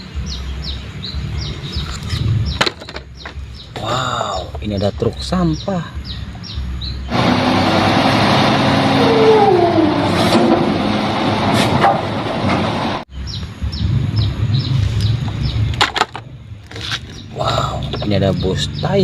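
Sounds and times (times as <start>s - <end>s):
low rumble: 0.0s - 7.1s, 7.9s - 18.9s
birds chirping: 0.0s - 7.6s, 13.0s - 19.0s
garbage truck engine hissing: 6.8s - 13.0s.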